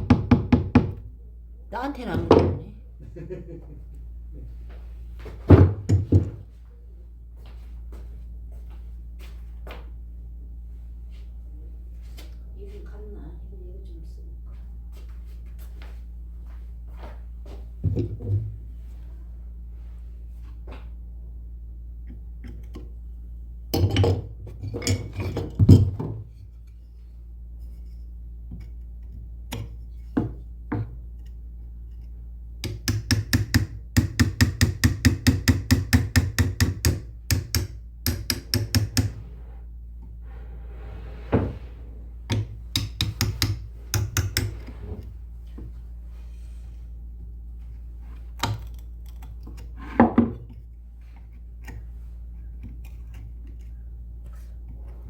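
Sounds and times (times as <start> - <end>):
steady low hum: 0.9 - 55.0
tool tapping on wood: 32.6 - 39.3, 42.3 - 44.8.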